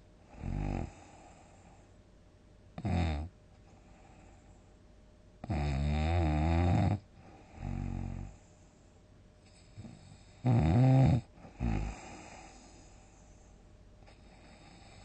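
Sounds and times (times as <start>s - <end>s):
person snoring loudly: 5.4s - 7.0s, 9.8s - 12.6s.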